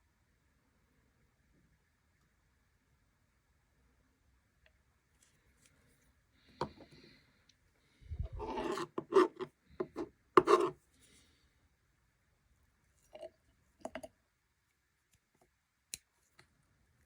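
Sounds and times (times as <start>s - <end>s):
rasping scrape: 8.2s - 10.8s.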